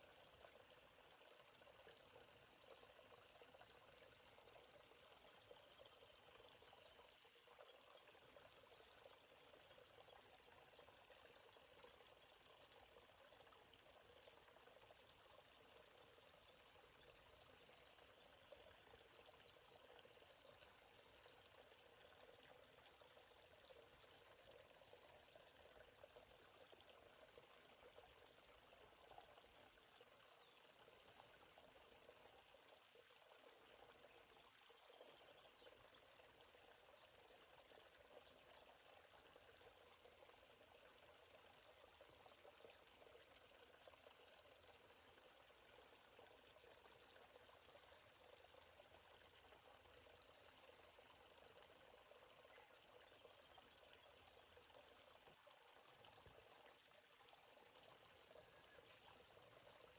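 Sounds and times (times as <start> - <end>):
high-pitched insect chorus: 0.0 - 59.9.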